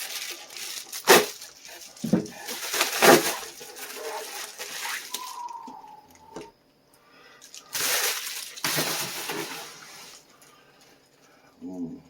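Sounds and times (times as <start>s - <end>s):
packaging rustling: 0.0s - 5.6s, 7.4s - 10.2s.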